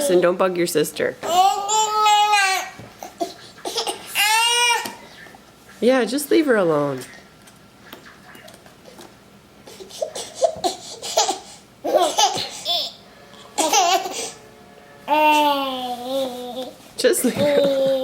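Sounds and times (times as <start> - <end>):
babies laughing and babbling: 1.2 - 5.0, 9.6 - 13.0, 15.1 - 18.0.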